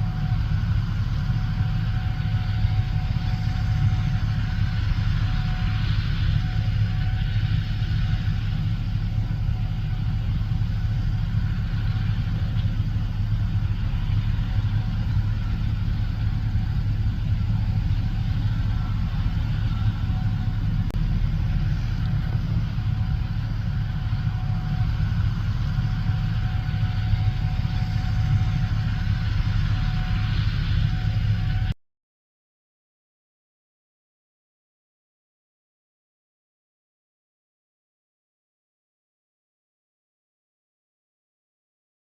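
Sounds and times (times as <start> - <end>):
combine harvester engine drone: 0.0 - 31.8
faint steady whine: 0.0 - 31.8.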